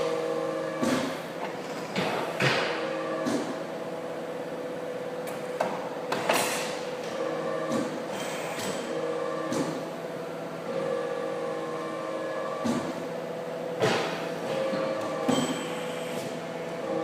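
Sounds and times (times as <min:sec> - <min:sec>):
machine motor hum: 0:00.0 - 0:17.0
machine clunks and clicks: 0:00.8 - 0:03.6.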